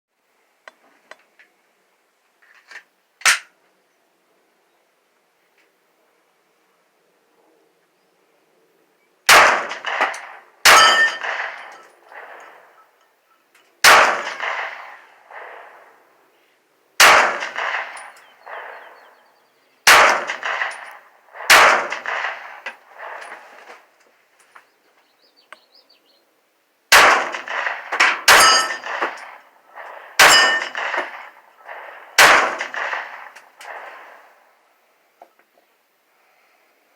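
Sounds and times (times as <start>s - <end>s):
gunshots: 9.3s - 12.8s, 13.8s - 16.0s, 17.0s - 19.2s, 19.9s - 23.8s, 26.9s - 34.4s
steel plate clanging: 10.7s - 11.8s, 27.6s - 29.4s, 30.2s - 31.2s.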